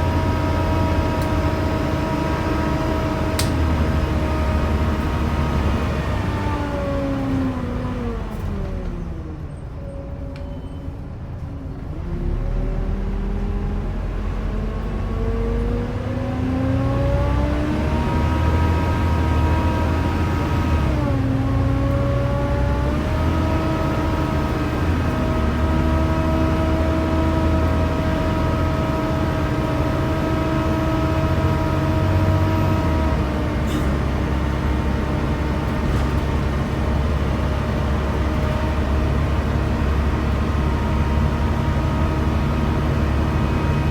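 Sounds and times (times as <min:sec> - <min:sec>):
bus engine whine: 0:00.0 - 0:43.9.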